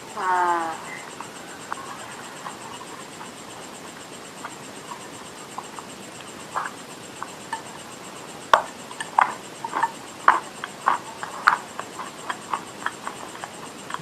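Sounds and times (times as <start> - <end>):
chewing crunchy clay: 8.5 - 14.0.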